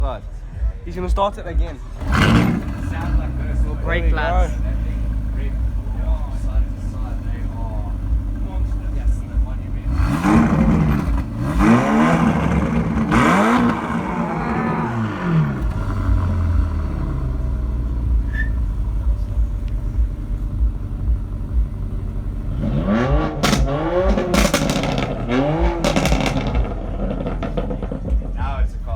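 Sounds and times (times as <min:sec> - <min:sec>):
car engine idling: 0:00.0 - 0:28.9
car engine revving: 0:01.4 - 0:28.9.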